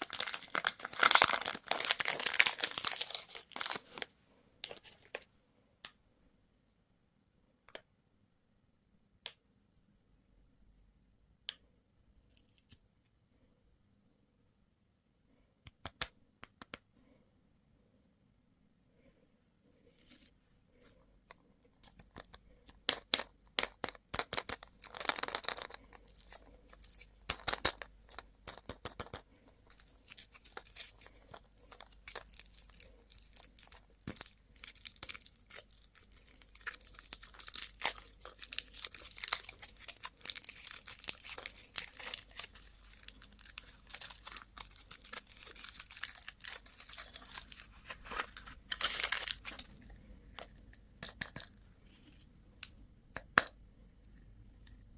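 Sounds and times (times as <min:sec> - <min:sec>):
plastic packaging crinkling and tearing: 0:00.0 - 0:04.1, 0:29.6 - 0:49.8.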